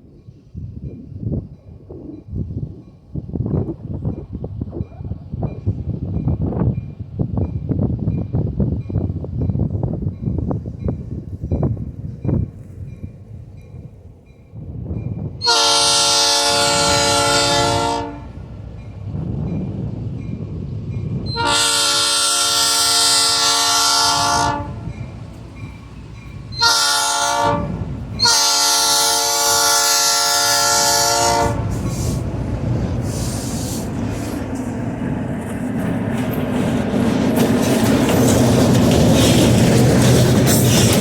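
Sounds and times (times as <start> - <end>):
train rolling rumble: 0.0 - 41.0
train horn blasts: 15.4 - 18.4, 21.3 - 25.0, 26.5 - 32.2.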